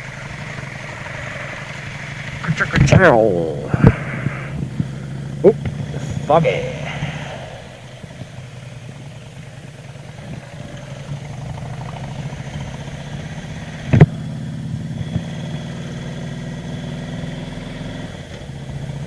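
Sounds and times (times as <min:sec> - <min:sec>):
motorcycle engine running: 0:00.0 - 0:19.0
sharp thump: 0:13.9 - 0:14.2.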